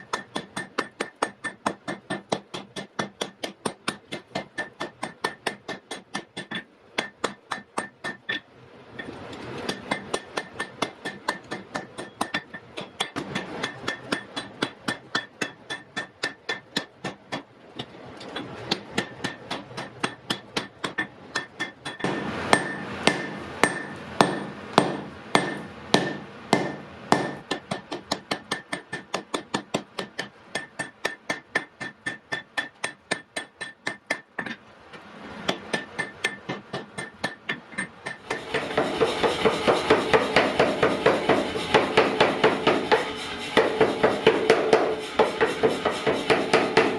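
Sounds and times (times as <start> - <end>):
hammer striking iron on anvil: 0.0 - 8.4, 9.6 - 34.6, 35.5 - 46.9.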